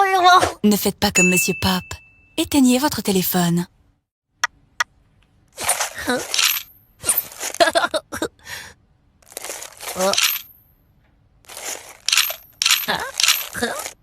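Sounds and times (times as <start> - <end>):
metallic ding bell: 1.2 - 2.4.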